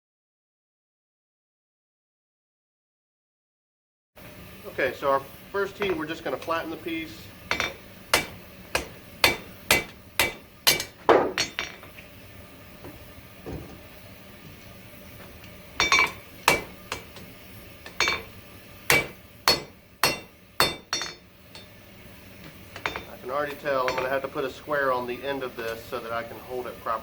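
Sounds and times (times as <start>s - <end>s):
hammer striking hot steel on anvil: 5.6s - 12.0s, 15.7s - 21.8s, 22.5s - 25.2s.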